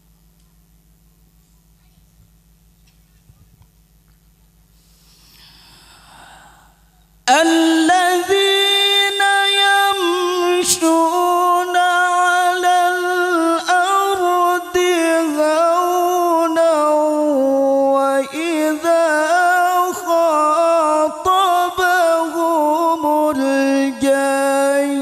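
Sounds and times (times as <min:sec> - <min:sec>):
breath: 0:04.7 - 0:07.1
person reciting melodiously: 0:07.3 - 0:25.0.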